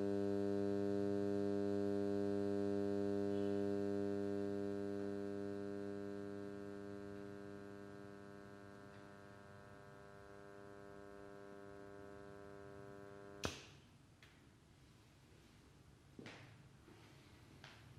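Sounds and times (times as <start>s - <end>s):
electrical mains hum: 0.0s - 17.9s
sharp click: 13.4s - 13.8s.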